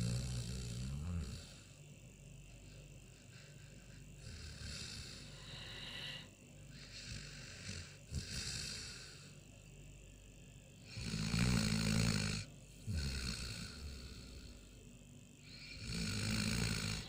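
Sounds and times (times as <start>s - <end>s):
animal snoring: 0.0s - 1.8s, 3.3s - 9.4s, 10.8s - 14.8s, 15.4s - 17.0s.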